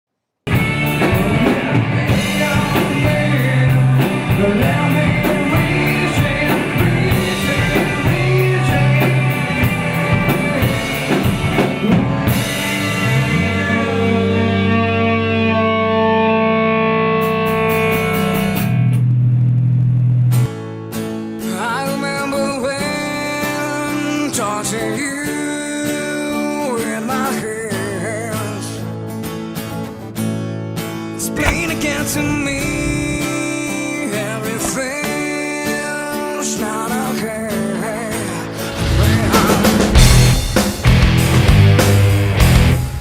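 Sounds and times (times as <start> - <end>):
rock band music: 0.5 - 14.7, 38.5 - 43.0
held guitar chords: 31.3 - 35.0
drum kit beat: 39.8 - 43.0.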